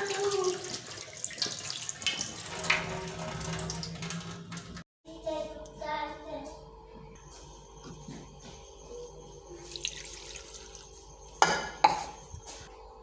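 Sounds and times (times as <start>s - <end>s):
water splashing in a sink: 0.0s - 4.8s, 9.6s - 11.0s.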